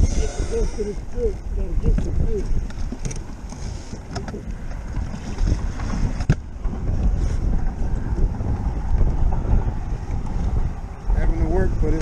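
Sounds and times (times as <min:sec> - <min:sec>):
wind buffeting microphone: 0:00.0 - 0:12.0.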